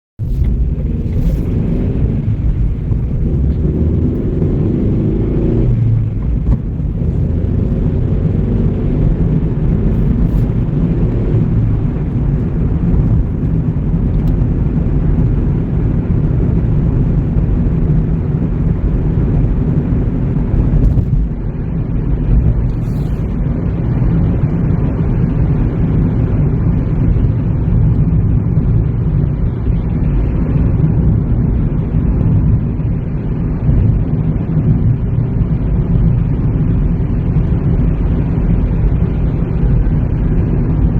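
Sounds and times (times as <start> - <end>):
car engine and road noise: 0.2 - 40.9.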